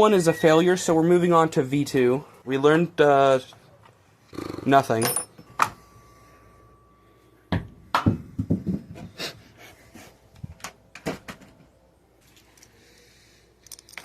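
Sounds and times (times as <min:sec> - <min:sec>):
hard objects knocking and clattering: 0:07.5 - 0:09.2.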